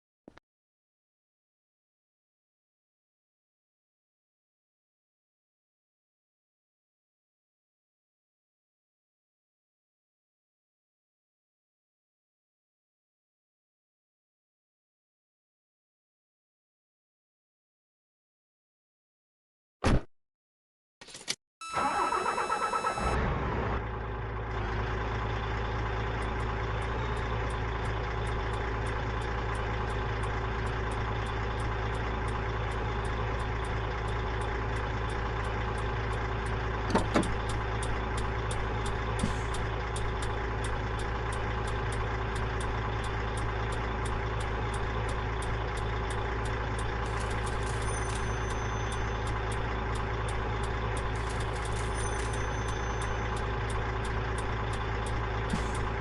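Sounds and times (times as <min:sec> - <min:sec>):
diesel truck engine idling: 0:21.8 - 0:56.0
click: 0:36.9 - 0:56.0
faint high ticking: 0:37.4 - 0:47.1, 0:48.4 - 0:55.5.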